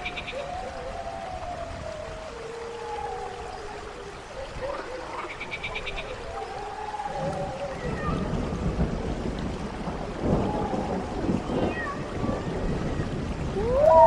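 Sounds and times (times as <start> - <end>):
faint wailing: 13.6 - 14.0.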